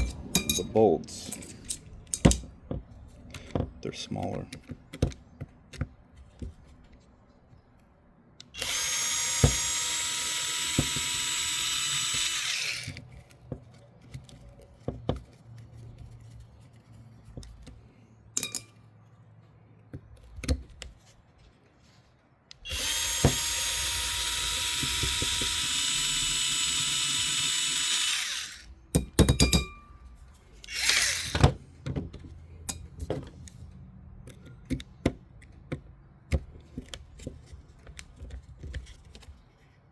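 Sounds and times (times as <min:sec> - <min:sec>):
cordless drill spinning: 0:08.6 - 0:13.1, 0:22.6 - 0:28.8, 0:30.6 - 0:31.6
small clicks of bolts handled: 0:32.1 - 0:39.6.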